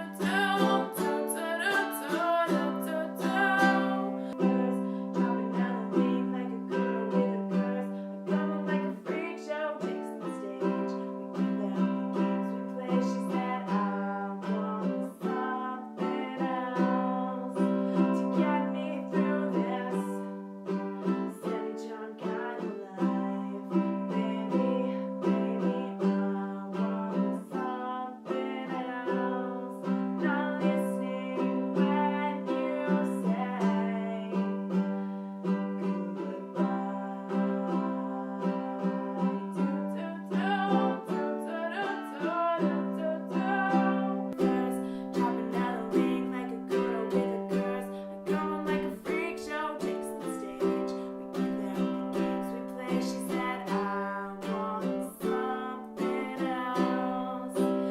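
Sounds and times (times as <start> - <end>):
plucked string instrument: 0.0 - 57.9.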